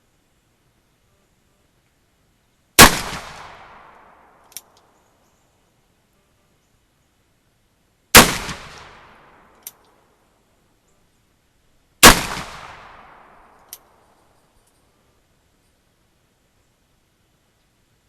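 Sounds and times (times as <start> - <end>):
revolver gunshots: 2.8 - 4.3, 8.2 - 9.5, 12.0 - 13.6.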